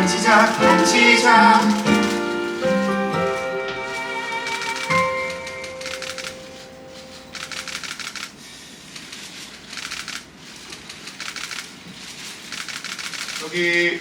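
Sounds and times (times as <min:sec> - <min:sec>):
piano note: 0:00.0 - 0:07.7
audience applauding: 0:00.0 - 0:07.9.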